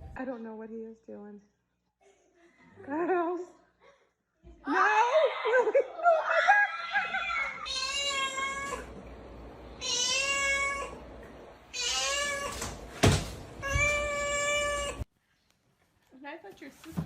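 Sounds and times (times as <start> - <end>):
cat meowing: 7.7 - 8.9, 9.8 - 11.0, 11.7 - 12.6, 13.6 - 15.0.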